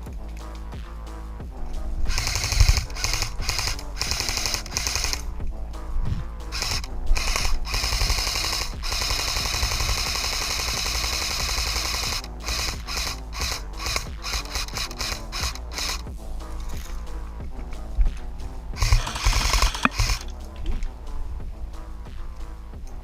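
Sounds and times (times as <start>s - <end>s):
airsoft gun firing: 2.1s - 5.2s, 6.5s - 16.0s, 18.8s - 20.2s.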